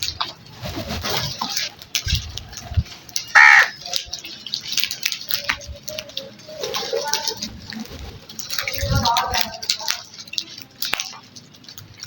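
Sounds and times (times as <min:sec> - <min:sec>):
crow cawing: 0:03.3 - 0:04.0.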